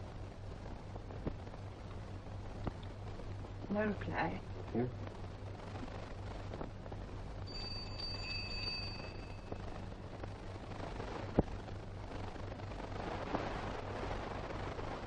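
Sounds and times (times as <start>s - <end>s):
film soundtrack hiss and hum: 0.0s - 15.0s
high steady tone: 7.4s - 10.0s.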